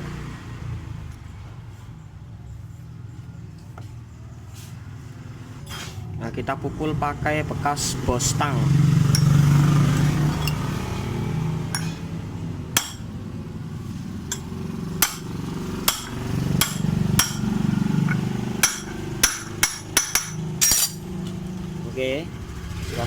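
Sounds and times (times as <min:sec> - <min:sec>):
hammer knocking on metal: 0:12.8 - 0:13.1, 0:15.9 - 0:17.5, 0:18.1 - 0:21.0.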